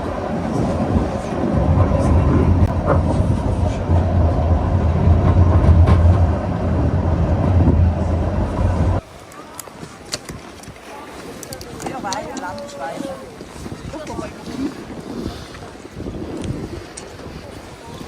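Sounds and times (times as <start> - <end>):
train rumbling on rails: 0.0 - 9.0.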